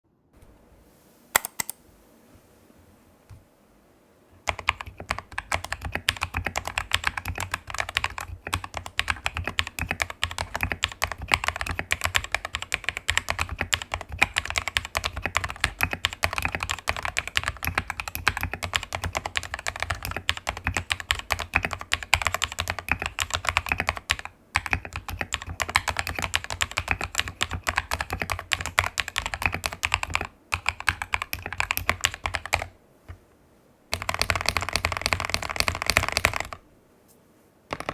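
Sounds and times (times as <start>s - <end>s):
mechanical keyboard typing: 1.4s - 1.8s, 4.4s - 32.7s, 33.9s - 36.6s.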